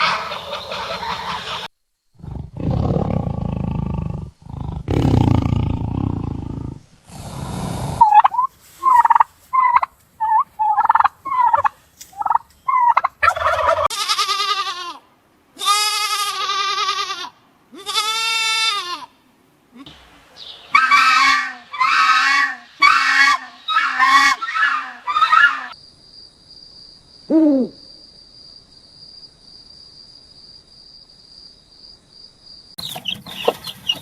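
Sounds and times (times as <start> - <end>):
turkey calls: 0.0 - 1.7, 8.0 - 13.9, 20.7 - 25.8, 32.8 - 34.0
goat bleating: 13.9 - 15.0, 15.6 - 19.1.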